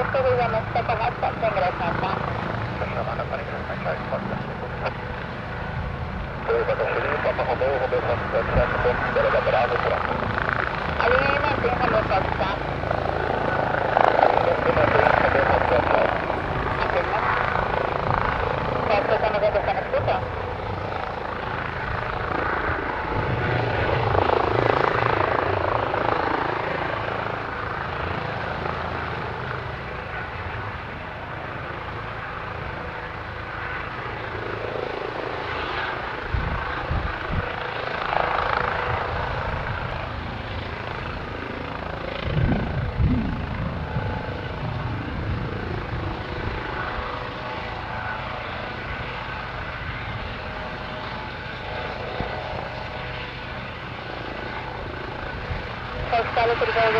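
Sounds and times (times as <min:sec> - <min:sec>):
helicopter rotor and engine: 0:00.0 - 0:56.9.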